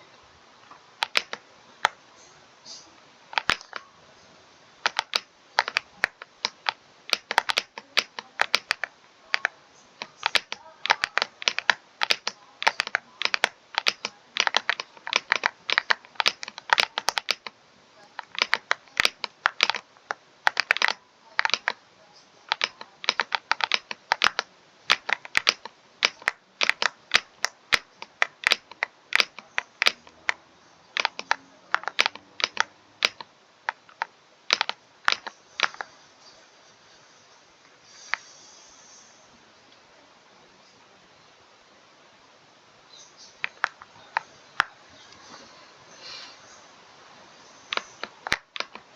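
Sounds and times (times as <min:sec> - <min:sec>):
keyboard typing clicks: 0:01.0 - 0:02.0, 0:03.4 - 0:03.8, 0:04.8 - 0:17.5, 0:18.2 - 0:21.8, 0:22.5 - 0:30.4, 0:31.0 - 0:35.9, 0:43.4 - 0:44.7, 0:47.7 - 0:48.8.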